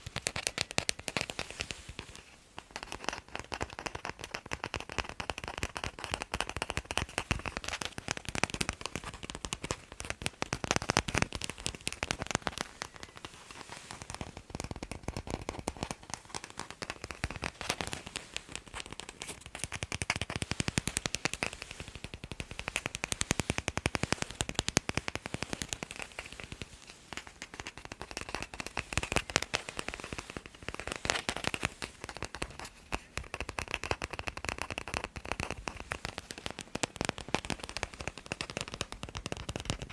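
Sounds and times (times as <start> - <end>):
fast tapping on a ball: 0.0 - 39.9.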